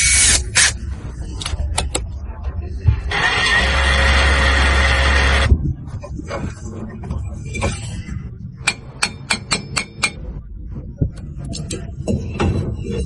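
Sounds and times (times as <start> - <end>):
hammer striking metal: 8.6 - 10.3.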